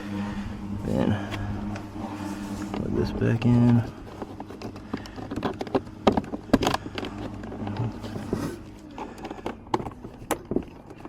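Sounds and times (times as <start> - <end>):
plastic trim parts clicking and knocking: 3.4 - 11.0.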